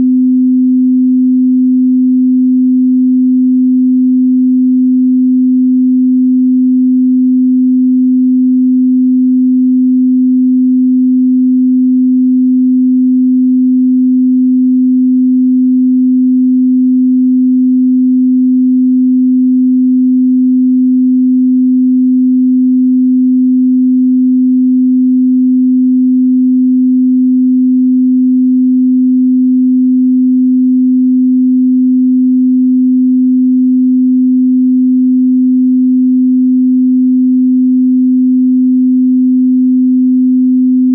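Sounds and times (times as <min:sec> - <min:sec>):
pure sine tone: 0:00.0 - 0:40.9.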